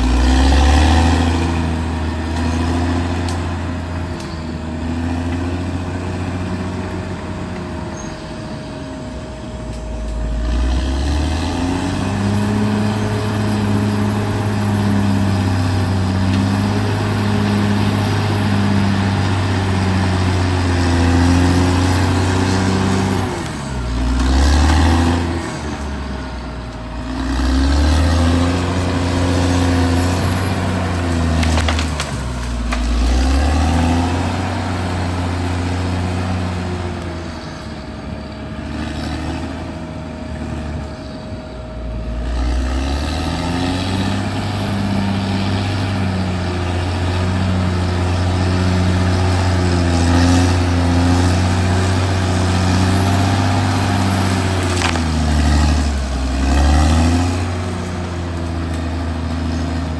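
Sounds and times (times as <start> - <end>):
bulldozer diesel engine under load: 0.0 - 59.9
thin steady whine: 7.0 - 10.8.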